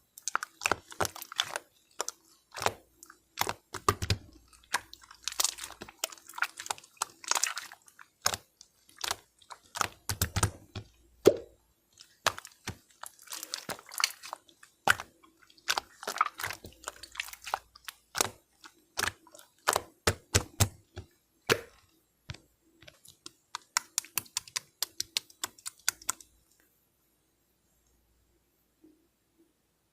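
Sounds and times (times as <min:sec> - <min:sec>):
crunchy chewing: 0:12.0 - 0:19.9.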